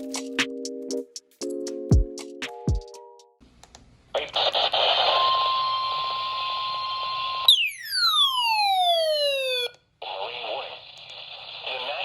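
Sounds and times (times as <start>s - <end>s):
radio static: 4.2s - 5.4s, 10.0s - 12.0s.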